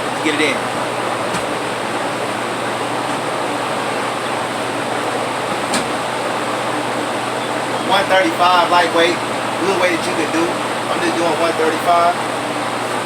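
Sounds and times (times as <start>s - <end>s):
electric fan blowing: 0.0s - 13.0s.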